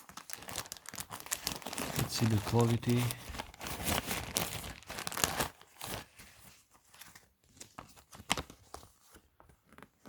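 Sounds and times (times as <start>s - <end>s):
plastic bag crinkling: 0.0s - 6.5s.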